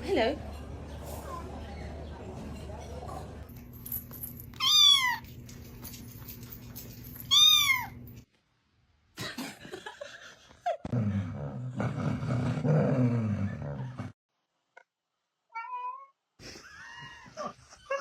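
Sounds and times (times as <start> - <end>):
cat meowing: 4.6 - 5.2.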